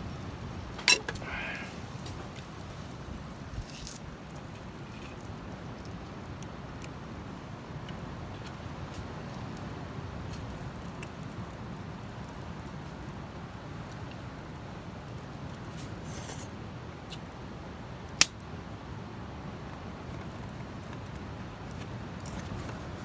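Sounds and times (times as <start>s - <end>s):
campfire crackling and popping: 0.0s - 22.4s
fire hiss: 0.5s - 3.8s.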